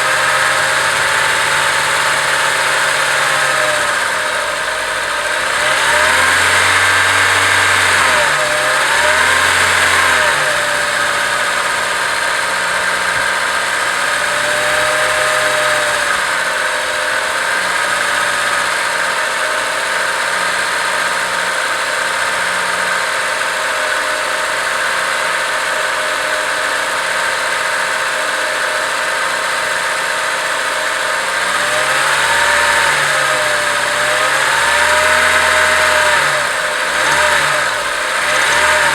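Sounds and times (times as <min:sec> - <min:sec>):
car engine idling and revving: 0:00.0 - 0:38.9.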